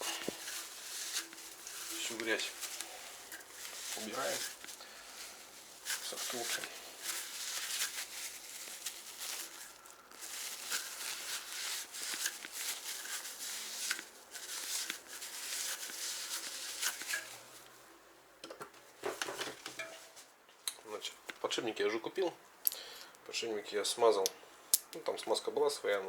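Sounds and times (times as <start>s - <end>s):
dirt rubbed off bicycle hub: 0.0s - 17.6s.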